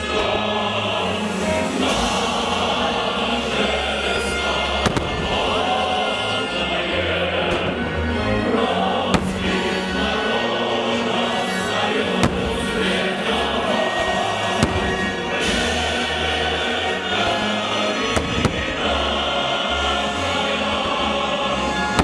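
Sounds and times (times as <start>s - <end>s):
choral music: 0.0s - 22.0s
fireworks bangs: 4.8s - 5.9s, 9.0s - 10.2s, 11.2s - 16.1s, 18.0s - 19.1s.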